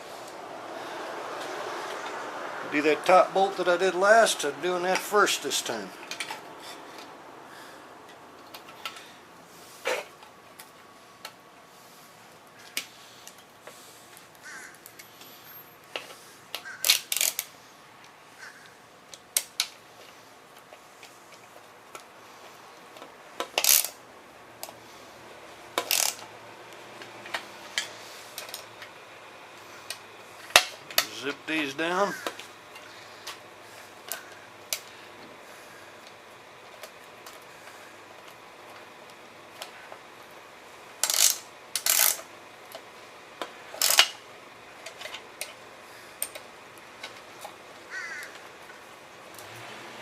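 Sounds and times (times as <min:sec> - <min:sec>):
hand tool clicking on metal bolts: 0:16.0 - 0:17.5, 0:23.4 - 0:24.0, 0:25.8 - 0:26.2, 0:41.0 - 0:42.2, 0:43.4 - 0:44.2.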